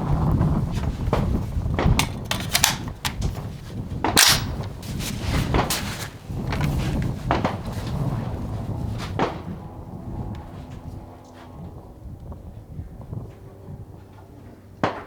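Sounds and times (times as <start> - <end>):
rifle clicks and cracks: 2.0 - 3.3, 4.2 - 4.7.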